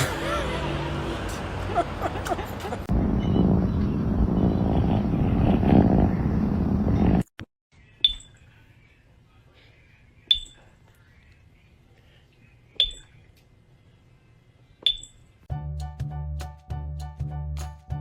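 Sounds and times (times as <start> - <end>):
music: 15.5 - 18.0.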